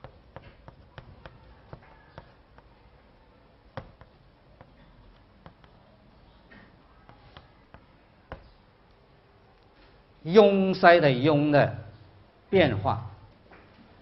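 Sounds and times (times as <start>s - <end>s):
writing on a board: 0.0s - 5.9s, 6.5s - 8.6s.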